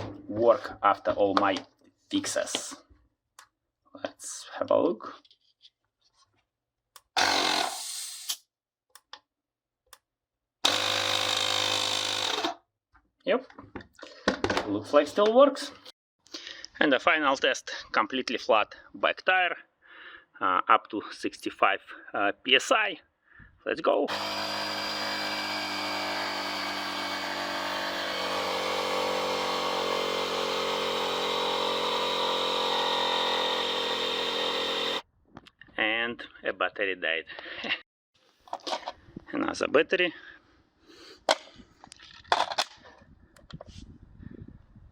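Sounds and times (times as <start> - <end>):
compressor motor humming: 24.1 - 35.0.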